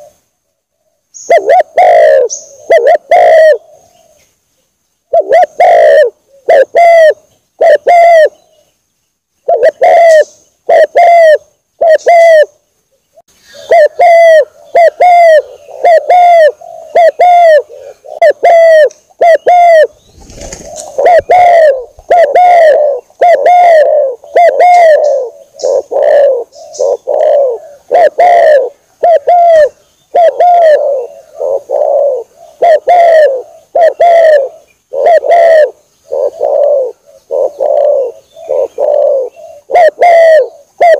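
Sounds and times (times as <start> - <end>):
dove cooing: 0.0 - 4.3, 5.1 - 8.6, 9.4 - 12.6, 13.5 - 40.9.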